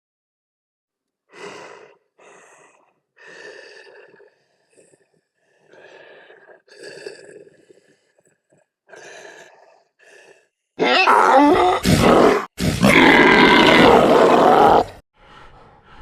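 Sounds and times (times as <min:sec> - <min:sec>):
harsh vocal grunts and snarls: 0:10.8 - 0:15.0.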